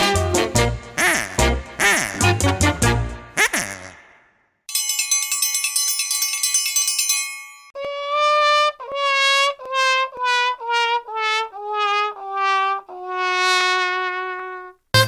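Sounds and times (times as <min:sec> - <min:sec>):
brass instrument descending notes: 0:00.0 - 0:04.2, 0:07.8 - 0:15.0.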